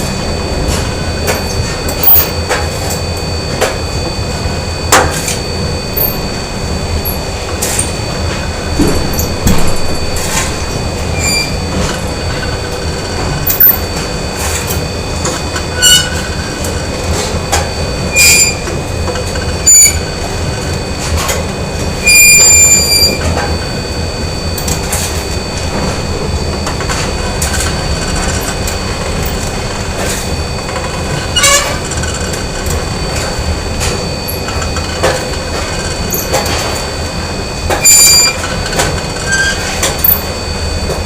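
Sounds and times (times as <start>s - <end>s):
machine hum: 0.0s - 41.0s
metallic clanks and bangs: 8.8s - 10.6s
high-pitched squeals: 9.0s - 11.8s, 22.0s - 23.3s.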